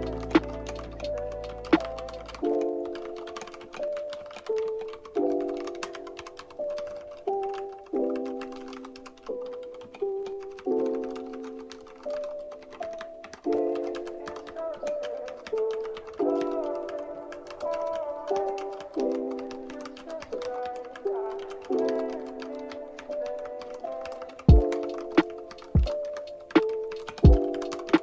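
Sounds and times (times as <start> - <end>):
background music of chords: 0.0 - 28.0
mechanical keyboard typing: 0.0 - 28.0.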